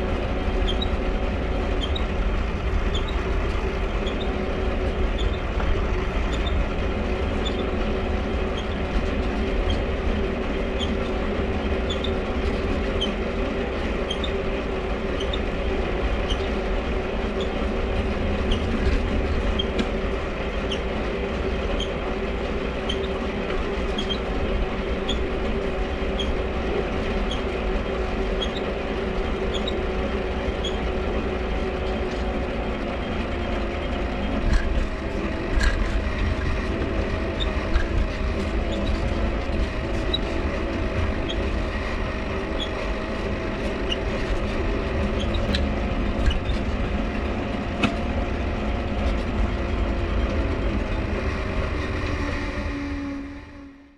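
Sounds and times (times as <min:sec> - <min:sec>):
tyre and wind rumble: 0:00.0 - 0:53.4
bicycle crank squeaking: 0:00.6 - 0:01.0, 0:01.7 - 0:02.2, 0:02.8 - 0:04.4, 0:07.4 - 0:07.7, 0:28.3 - 0:28.7, 0:29.5 - 0:29.9, 0:33.9 - 0:46.7.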